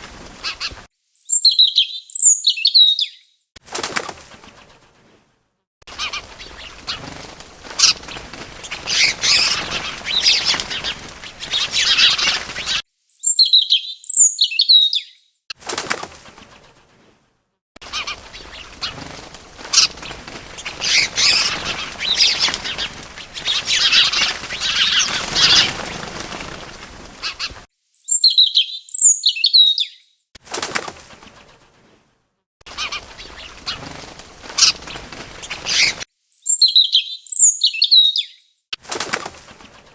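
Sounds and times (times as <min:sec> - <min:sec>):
bird wings flapping: 0:00.0 - 0:00.9, 0:03.6 - 0:05.2, 0:05.9 - 0:12.8, 0:15.5 - 0:17.2, 0:17.8 - 0:27.7, 0:30.4 - 0:32.1, 0:32.7 - 0:36.1, 0:38.8 - 0:39.9.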